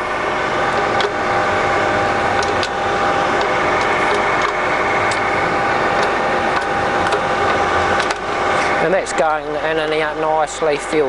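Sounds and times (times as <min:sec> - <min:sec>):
lathe gear whine: 0:00.0 - 0:11.0.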